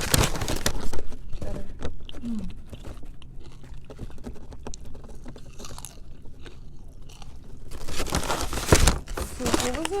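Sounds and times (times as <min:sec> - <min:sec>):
person chewing: 0:01.1 - 0:08.0.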